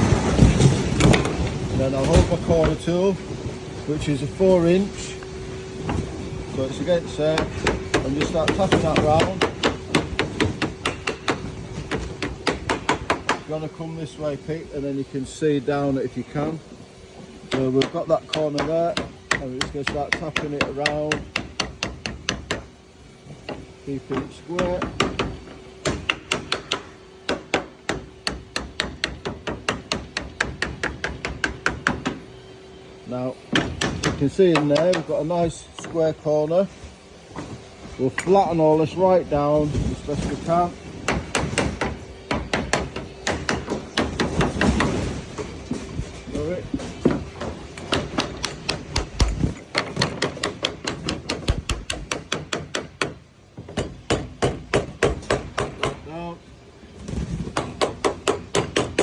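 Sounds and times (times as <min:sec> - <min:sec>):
tool tapping sheet lead: 0:17.5 - 0:22.6.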